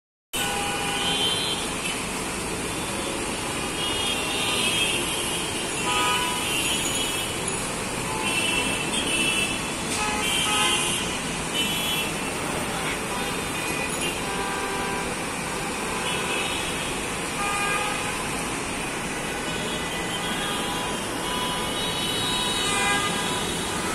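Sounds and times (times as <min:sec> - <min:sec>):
city road traffic: 0:00.3 - 0:23.9
vehicle horns honking: 0:00.4 - 0:02.0, 0:03.6 - 0:07.4, 0:08.1 - 0:18.4, 0:19.3 - 0:23.9.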